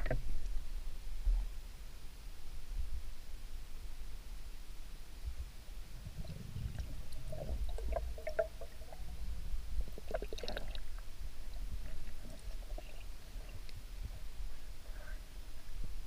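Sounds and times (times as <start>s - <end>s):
underwater clicks and gurgles: 0.0s - 0.6s, 5.2s - 16.0s
muffled underwater rumble: 5.2s - 16.0s.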